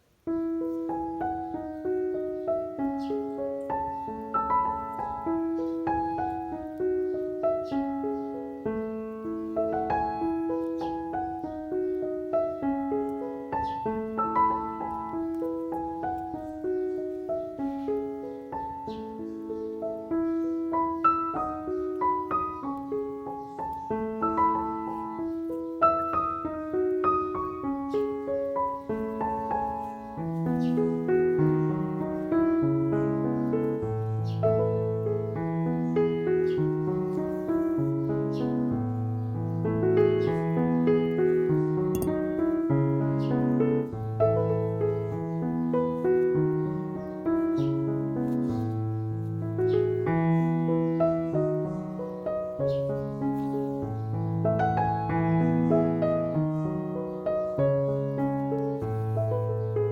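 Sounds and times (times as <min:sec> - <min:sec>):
gentle piano music: 0:00.0 - 0:59.9.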